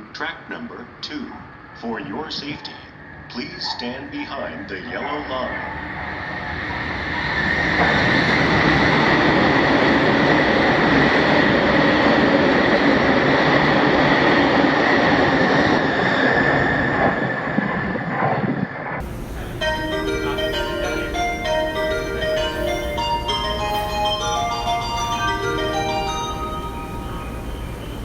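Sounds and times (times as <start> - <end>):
train passing at speed: 0.0 - 28.0
high whine: 19.0 - 28.0.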